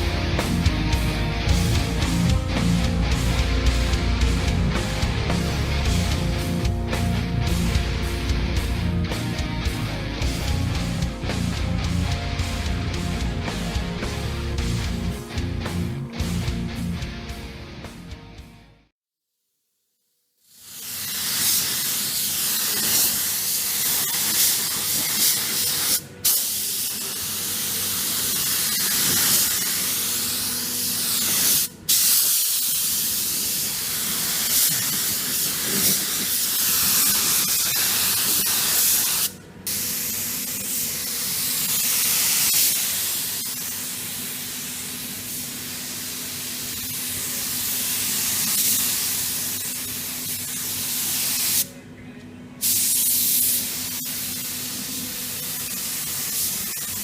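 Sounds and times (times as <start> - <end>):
paint spray gun hissing: 20.4 - 51.7, 52.6 - 57.0.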